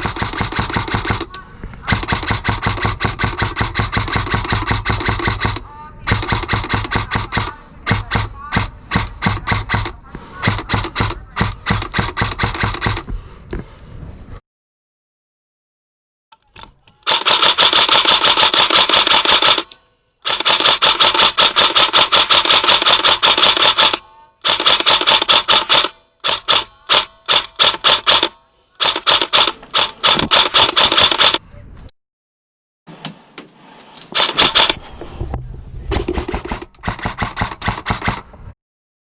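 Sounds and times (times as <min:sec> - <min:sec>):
airsoft gun firing full auto: 0:00.0 - 0:01.3, 0:01.9 - 0:13.0, 0:17.1 - 0:31.4, 0:34.2 - 0:34.8, 0:36.0 - 0:38.2.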